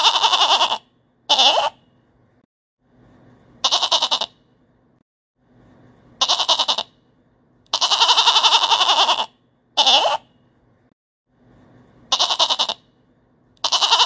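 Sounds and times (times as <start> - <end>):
goat bleating: 0.0 - 1.8, 3.6 - 4.4, 6.2 - 6.9, 7.7 - 10.2, 12.1 - 12.8, 13.6 - 14.0.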